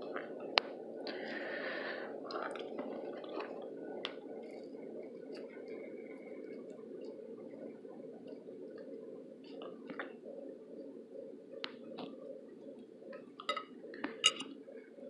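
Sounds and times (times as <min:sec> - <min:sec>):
steady background noise: 0:00.0 - 0:15.0.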